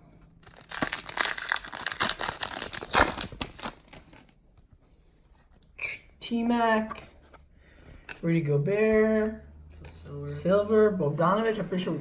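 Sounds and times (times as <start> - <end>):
plastic wrapper tearing and crinkling: 0.4 - 4.4.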